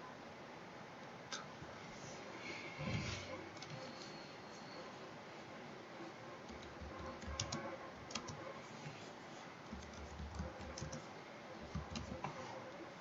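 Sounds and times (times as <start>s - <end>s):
computer keyboard typing: 6.5s - 8.5s, 9.7s - 12.4s.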